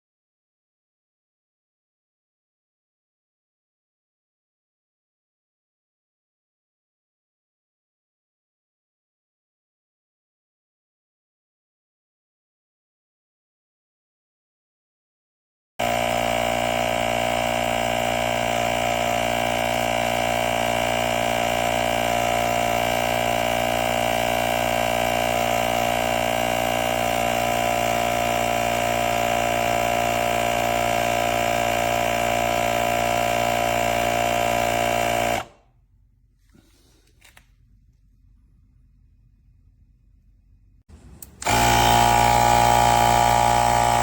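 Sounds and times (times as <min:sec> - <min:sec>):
small electric air compressor running: 0:15.8 - 0:35.7, 0:40.9 - 0:44.0.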